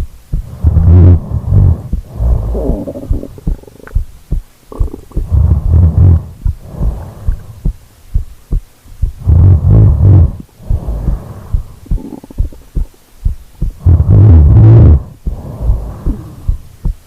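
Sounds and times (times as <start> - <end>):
person snoring: 0.5 - 3.9, 4.7 - 7.6, 9.2 - 13.0, 13.8 - 16.6.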